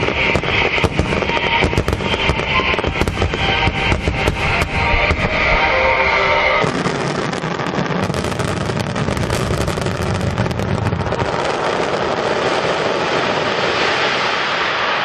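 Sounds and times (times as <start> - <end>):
fireworks crackling pops: 0.0 - 5.7, 6.6 - 15.0
low rumble: 0.4 - 6.7.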